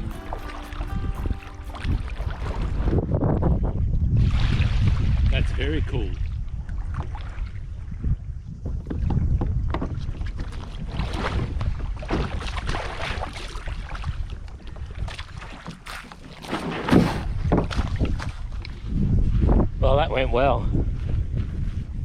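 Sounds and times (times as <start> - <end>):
paddle strokes splashing water: 0.0 - 3.1, 8.8 - 18.9
wind buffeting microphone: 0.0 - 16.0, 17.0 - 22.0.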